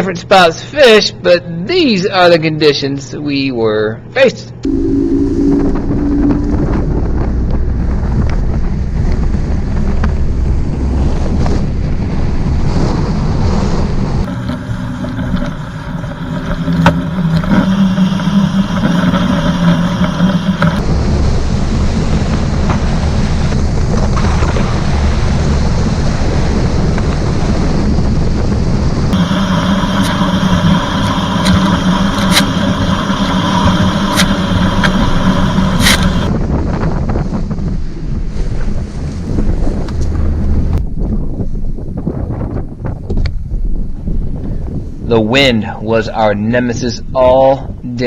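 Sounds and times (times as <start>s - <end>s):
gusting wind on microphone: 4.6s - 46.0s
steady motor hum: 14.2s - 20.8s, 29.0s - 36.3s.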